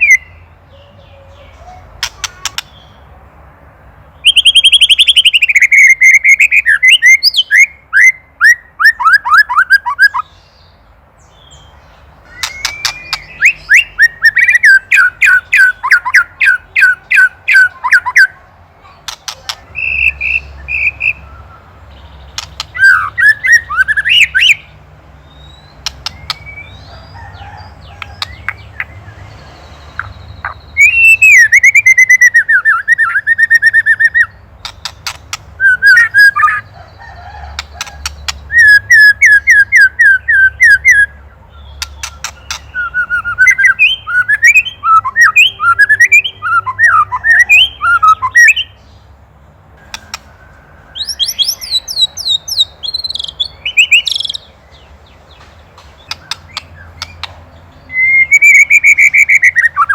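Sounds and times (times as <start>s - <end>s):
bird sharp dry clicks: 2.0s - 2.8s, 12.3s - 13.3s, 19.0s - 19.6s, 22.3s - 23.0s, 25.8s - 26.5s, 34.6s - 35.6s, 41.7s - 43.6s, 49.8s - 50.3s, 55.4s - 57.4s
bird singing whistled phrases: 4.2s - 10.3s, 12.3s - 18.4s, 19.3s - 21.7s, 22.6s - 24.7s, 30.0s - 34.4s, 35.1s - 36.7s, 38.5s - 48.8s, 50.9s - 54.5s, 57.8s - 59.9s.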